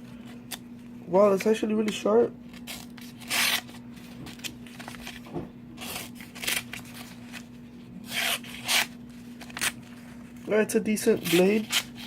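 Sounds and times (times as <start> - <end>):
knife blade slicing paper: 8.1 - 9.8, 11.1 - 12.0.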